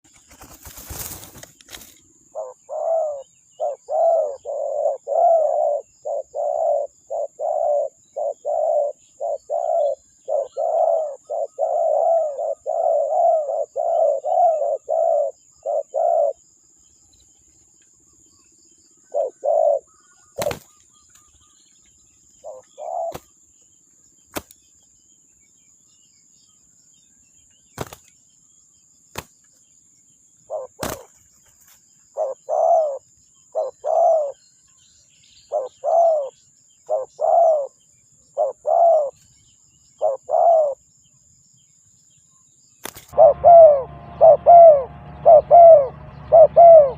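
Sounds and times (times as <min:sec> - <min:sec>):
dove cooing: 0:02.3 - 0:16.4, 0:19.0 - 0:20.8, 0:22.4 - 0:23.3, 0:30.5 - 0:31.2, 0:32.1 - 0:34.4, 0:35.5 - 0:39.2, 0:40.0 - 0:40.8, 0:43.1 - 0:46.9.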